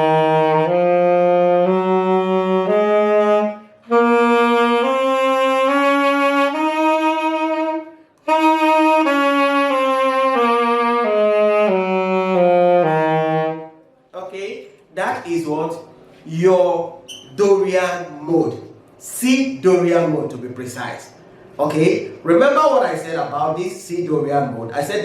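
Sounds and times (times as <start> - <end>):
saxophone playing a scale: 0.0 - 14.0
player taking a breath: 21.2 - 21.6.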